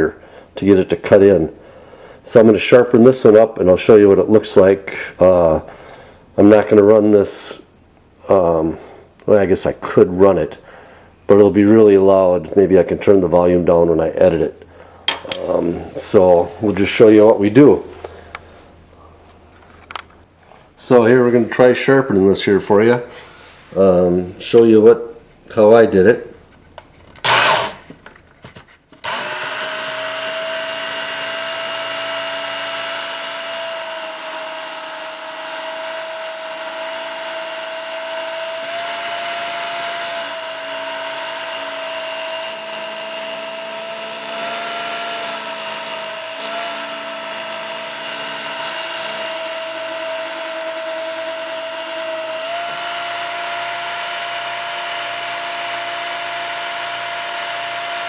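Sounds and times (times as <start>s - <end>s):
belt sharpener whining: 27.2s - 27.9s, 29.0s - 58.0s.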